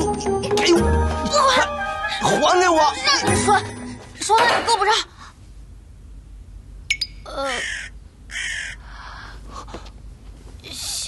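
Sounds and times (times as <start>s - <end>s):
crow cawing: 7.5s - 8.9s.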